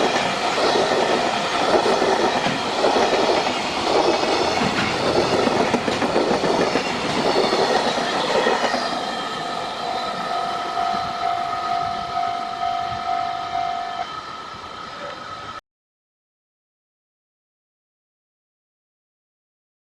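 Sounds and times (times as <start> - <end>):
freight train wagons clattering: 0.0 - 12.2
level-crossing alarm ringing: 0.0 - 15.6.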